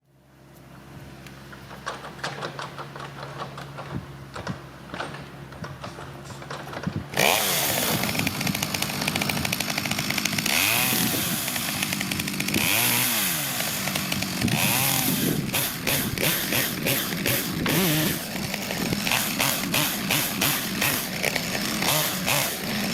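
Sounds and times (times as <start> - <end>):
chainsaw cutting wood: 1.5 - 22.9
chainsaw idling and revving: 7.1 - 22.9.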